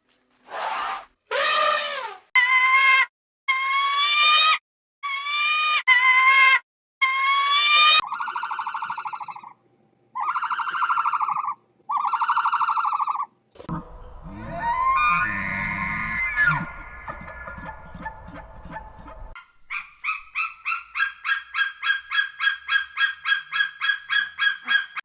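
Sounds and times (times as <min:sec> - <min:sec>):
animal buzzy pulsing calls: 0:13.7 - 0:19.4
animal siren-like cries: 0:13.7 - 0:19.4.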